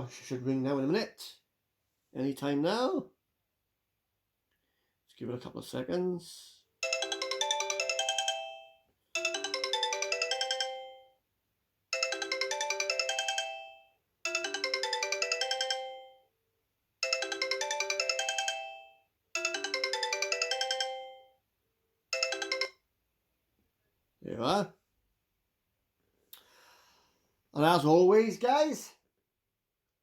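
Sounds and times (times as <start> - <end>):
phone ringtone chiming notes: 6.8 - 11.2, 11.9 - 16.3, 17.0 - 21.4, 22.1 - 22.8.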